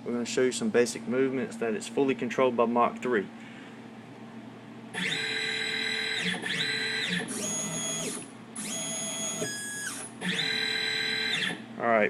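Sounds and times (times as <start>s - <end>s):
stepper motors whining: 5.0s - 11.6s.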